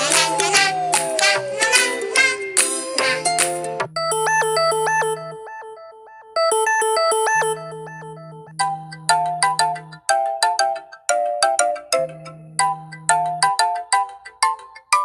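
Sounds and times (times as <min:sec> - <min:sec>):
electronic phone ringtone melody: 0:00.0 - 0:10.1.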